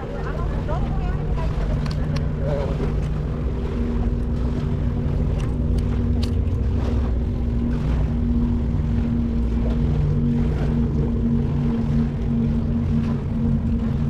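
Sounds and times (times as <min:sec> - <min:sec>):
boat engine humming: 0:00.0 - 0:14.0.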